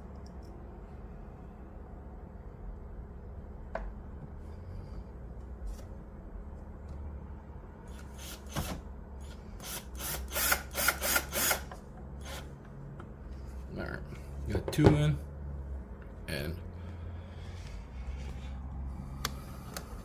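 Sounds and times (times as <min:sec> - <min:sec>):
faint low hum: 0:00.0 - 0:10.5.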